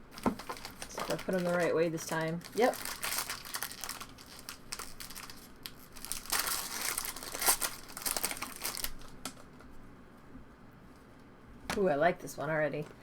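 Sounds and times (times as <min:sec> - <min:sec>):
card pack wrappers crinkling and tearing: 0:00.1 - 0:09.6.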